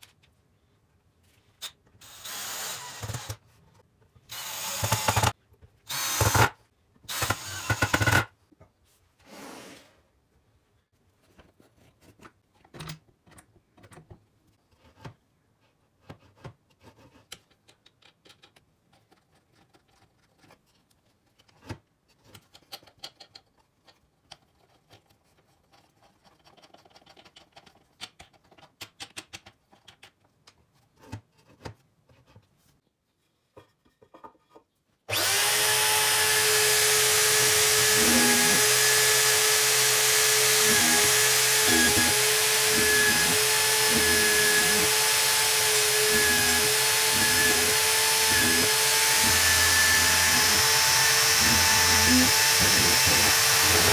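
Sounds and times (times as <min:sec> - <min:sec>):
electric drill running: 0:02.0 - 0:03.4, 0:04.3 - 0:05.3, 0:05.9 - 0:06.5, 0:07.1 - 0:08.2, 0:35.1 - 0:53.9
parts clicking and knocking: 0:17.3 - 0:20.0.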